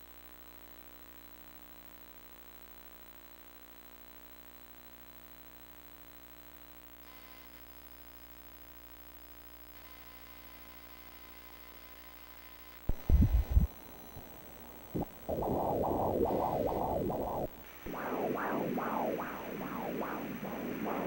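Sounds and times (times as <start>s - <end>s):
doppler heartbeat whooshing pulses: 12.9s - 21.0s
low thumps: 12.9s - 21.0s.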